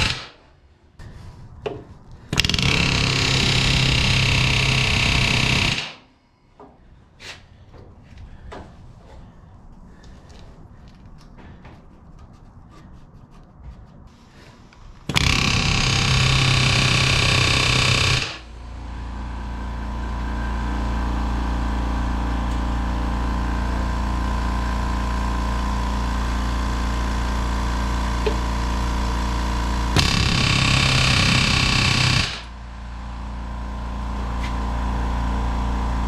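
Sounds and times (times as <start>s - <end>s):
power tool running loudly: 0.0s - 0.3s, 2.3s - 6.1s, 15.0s - 36.0s
steady motor hum: 7.6s - 36.0s.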